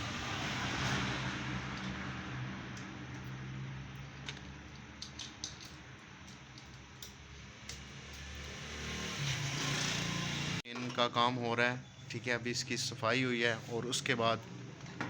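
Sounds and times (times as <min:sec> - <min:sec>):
metallic clicks of tools: 0:04.2 - 0:08.3.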